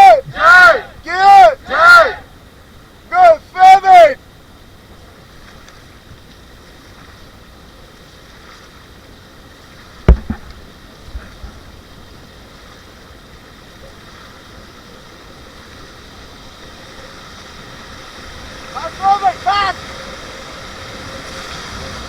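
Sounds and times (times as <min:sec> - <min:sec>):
river water rushing: 0:00.0 - 0:22.0
knocks on raft: 0:10.0 - 0:10.6.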